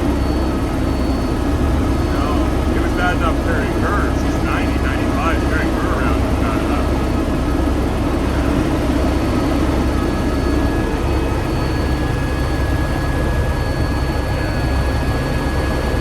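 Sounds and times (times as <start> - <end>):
thin high whine: 0.0 - 12.6
helicopter rotor and engine: 0.0 - 16.0.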